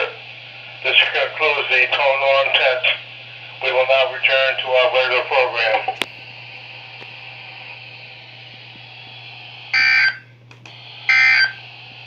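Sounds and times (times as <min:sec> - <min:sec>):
low hum: 0:00.0 - 0:12.0
radio speaker hiss: 0:00.0 - 0:12.0
shrill data bursts: 0:09.7 - 0:10.3, 0:11.0 - 0:11.6.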